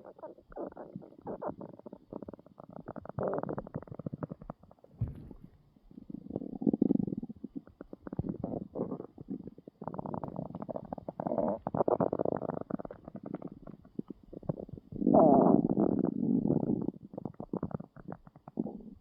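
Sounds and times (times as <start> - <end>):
stomach growling: 0.0 - 19.0.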